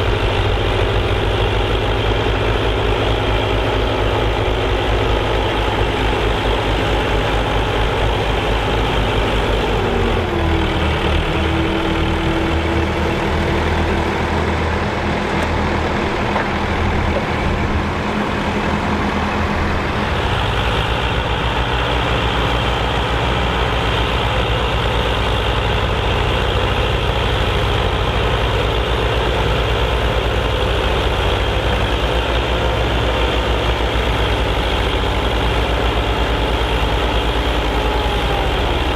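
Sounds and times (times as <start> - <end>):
tractor engine ploughing: 0.0 - 38.9.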